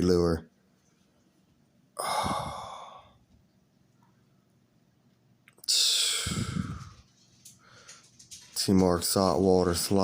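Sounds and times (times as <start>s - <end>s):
person breathing out heavily: 2.0s - 3.2s, 5.7s - 8.0s.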